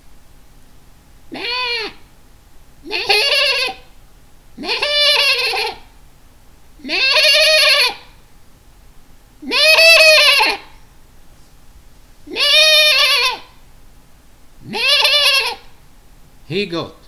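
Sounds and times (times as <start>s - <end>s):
person imitating goat bleats: 1.3s - 2.0s, 2.9s - 3.8s, 4.6s - 5.8s, 6.8s - 7.9s, 14.7s - 15.6s.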